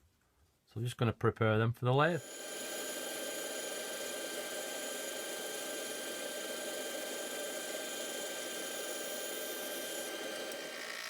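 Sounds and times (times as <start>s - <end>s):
woodworking machine whirring: 2.2s - 11.0s.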